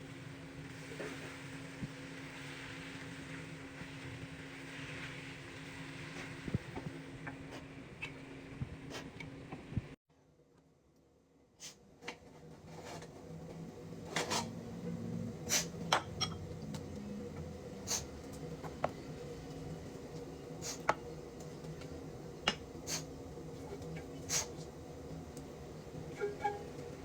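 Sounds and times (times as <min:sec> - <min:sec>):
steady low hum: 0:00.0 - 0:27.0
utensils clinking on dishes: 0:15.9 - 0:16.5.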